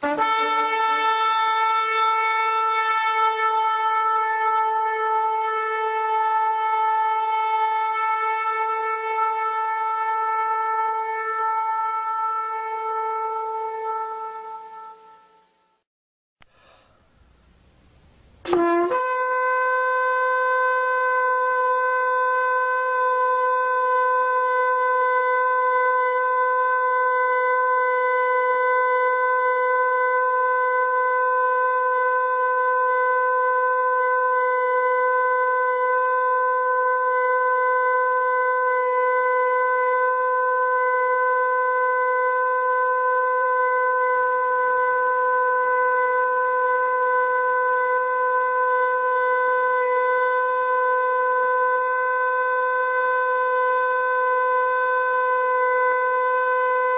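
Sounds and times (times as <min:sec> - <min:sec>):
shofar blast: 0:00.0 - 0:15.7, 0:18.4 - 0:56.9.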